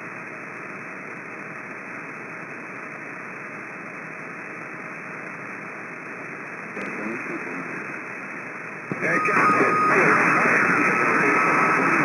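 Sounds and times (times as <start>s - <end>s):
radio static hiss: 0.0s - 12.0s
faint garbled radio voice: 8.9s - 12.0s.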